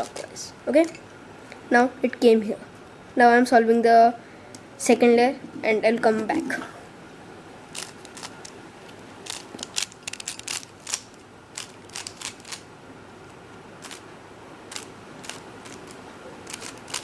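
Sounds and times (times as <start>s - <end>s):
puzzle cube plastic clicks: 7.7s - 8.6s, 9.2s - 12.6s, 14.7s - 17.0s.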